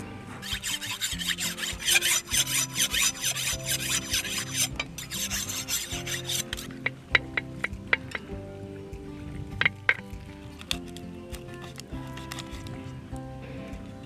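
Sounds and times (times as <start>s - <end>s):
background music with sustained tones: 0.0s - 14.0s
rapid rasping scraping strokes: 0.4s - 6.9s.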